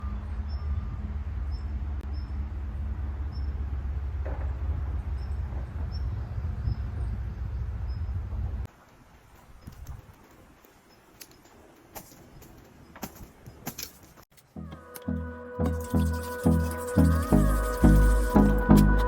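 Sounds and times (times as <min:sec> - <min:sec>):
steady low rumble: 0:00.0 - 0:08.7.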